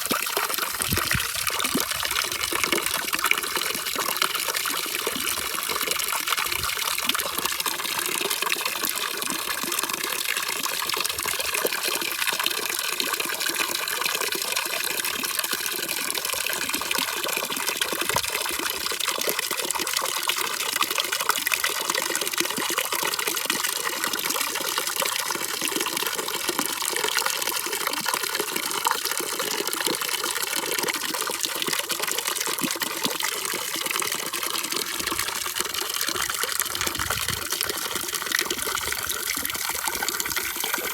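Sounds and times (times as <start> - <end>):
rushing splashing water: 0.0 - 7.5, 35.0 - 40.9.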